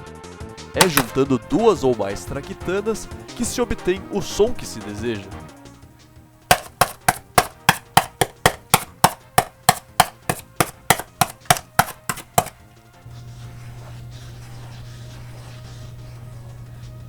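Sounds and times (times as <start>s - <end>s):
rapid sharp knocks: 0.8s - 1.2s, 6.5s - 12.6s.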